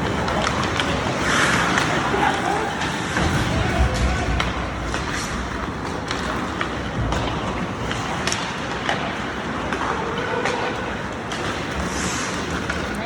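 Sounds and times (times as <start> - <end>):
hockey sticks and puck clacking: 0.0 - 13.0
skates scraping on ice: 0.0 - 13.0.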